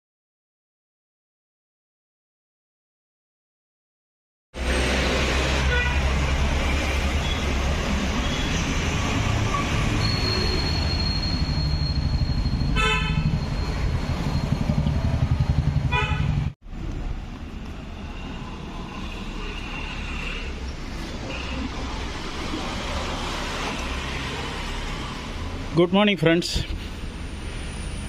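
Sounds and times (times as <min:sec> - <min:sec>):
road traffic rumble: 0:04.6 - 0:28.0
car horn toots: 0:05.6 - 0:06.0, 0:12.8 - 0:13.4, 0:15.9 - 0:16.4.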